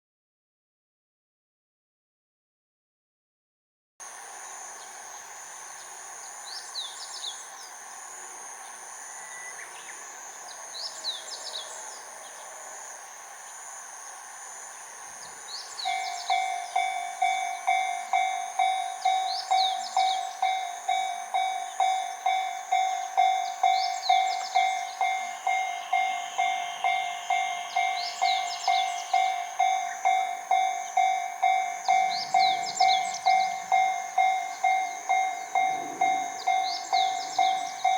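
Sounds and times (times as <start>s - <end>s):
bird chirps: 5.8s - 7.8s, 15.1s - 37.9s
level crossing warning bell: 15.7s - 37.9s.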